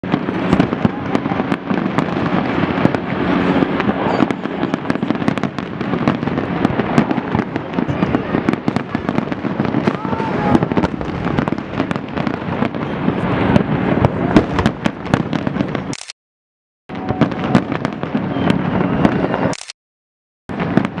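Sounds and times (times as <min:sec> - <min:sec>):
continuous rumbling haze: 0:00.0 - 0:16.0, 0:16.9 - 0:19.6
fireworks bangs and crackling: 0:00.0 - 0:16.0, 0:16.9 - 0:19.6, 0:20.5 - 0:21.0.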